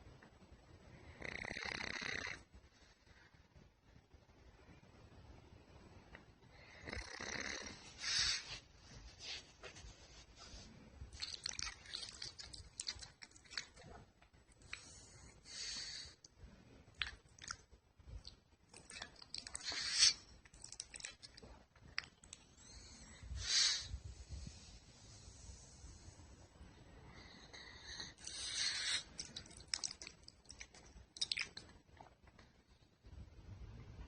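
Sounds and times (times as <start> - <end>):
dog snoring: 1.0 - 2.5, 6.6 - 8.4.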